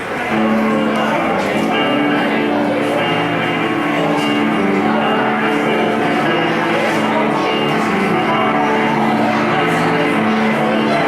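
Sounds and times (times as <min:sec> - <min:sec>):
loud music with guitar: 0:00.0 - 0:11.0.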